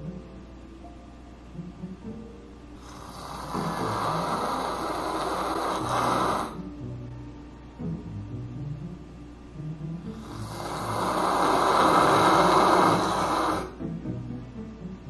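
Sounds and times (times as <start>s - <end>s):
man fake snoring: 2.8s - 6.7s, 10.1s - 13.8s.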